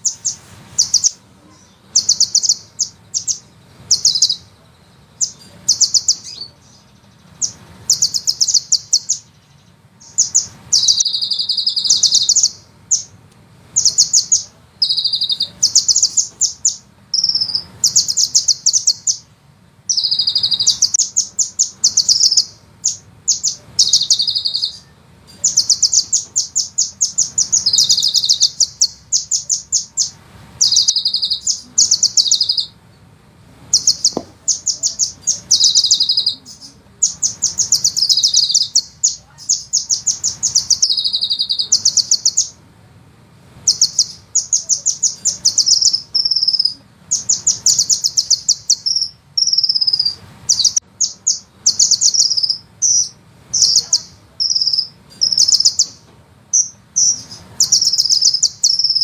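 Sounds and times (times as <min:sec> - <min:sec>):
bird trilling: 0:00.0 - 0:04.6, 0:05.2 - 0:13.2, 0:13.8 - 0:19.3, 0:19.9 - 0:32.8, 0:33.7 - 0:42.6, 0:43.7 - 0:59.0.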